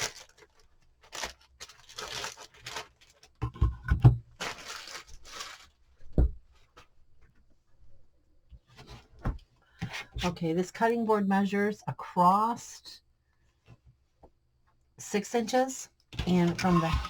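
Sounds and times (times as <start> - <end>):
packaging tearing and rustling: 0.0 - 3.4, 4.4 - 5.8.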